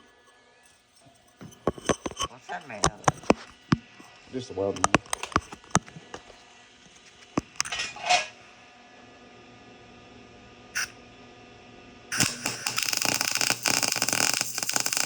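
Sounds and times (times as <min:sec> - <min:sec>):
clicks and rustles of handling: 0:04.7 - 0:06.3
welder arc crackling: 0:12.1 - 0:15.0.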